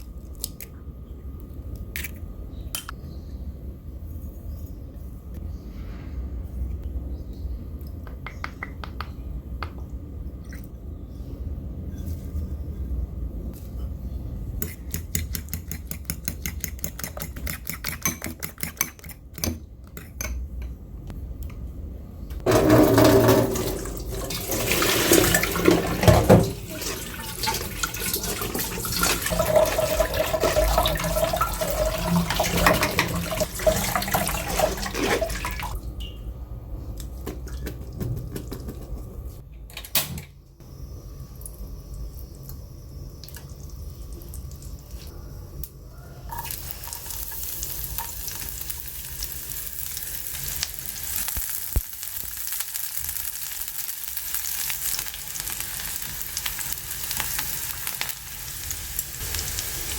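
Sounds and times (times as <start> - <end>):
tap water running into sink: 22.5 - 35.8.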